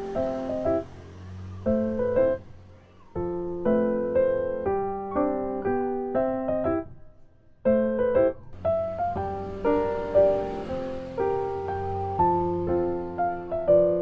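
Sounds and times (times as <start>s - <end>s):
slow piano music: 0.0s - 14.0s.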